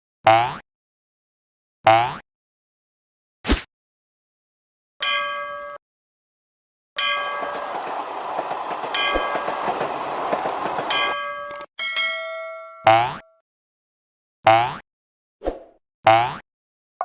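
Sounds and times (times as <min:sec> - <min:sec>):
railroad crossing bell clanging: 0:05.0 - 0:05.8, 0:07.0 - 0:12.9
train passing: 0:07.0 - 0:11.7.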